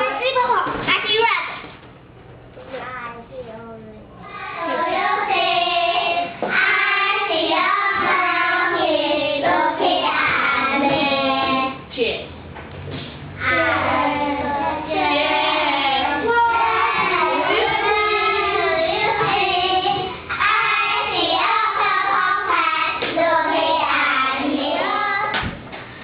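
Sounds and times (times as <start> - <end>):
children singing: 4.2 - 11.8, 13.4 - 25.4.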